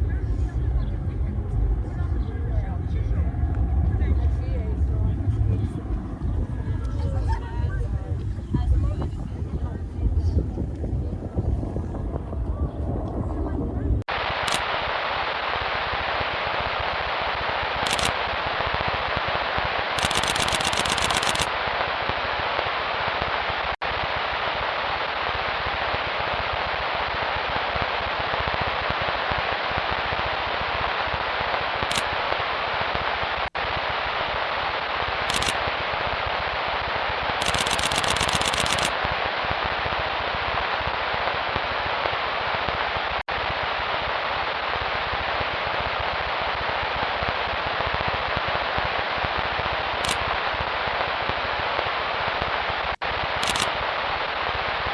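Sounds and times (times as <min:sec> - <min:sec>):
fireworks crackling: 0:02.8 - 0:54.9
high hiss bursts: 0:14.1 - 0:54.9.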